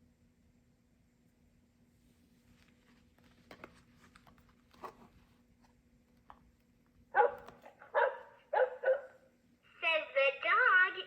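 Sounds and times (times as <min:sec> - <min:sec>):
rustling and clicks of book: 0:02.3 - 0:07.8
toy speaker playing recorded sound: 0:09.8 - 0:11.0.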